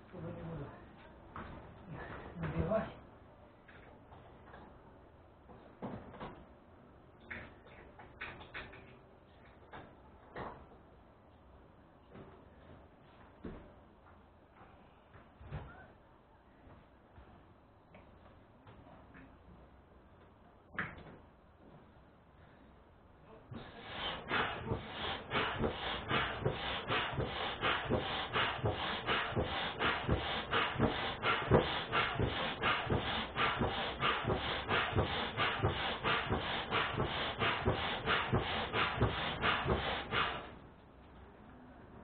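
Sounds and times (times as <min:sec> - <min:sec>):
air pump puffing: 0:23.5 - 0:40.6.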